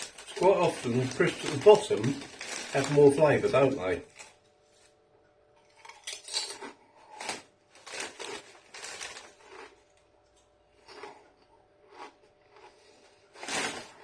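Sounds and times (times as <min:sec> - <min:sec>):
foil crisp packet crackling: 0:00.0 - 0:04.8, 0:07.2 - 0:09.8.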